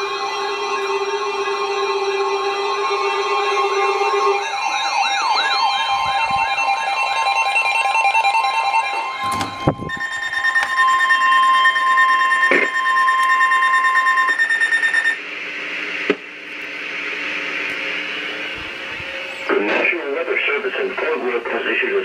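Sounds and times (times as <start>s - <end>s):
electronic alert tone: 4.7s - 15.2s
radio noise hiss: 15.4s - 22.0s.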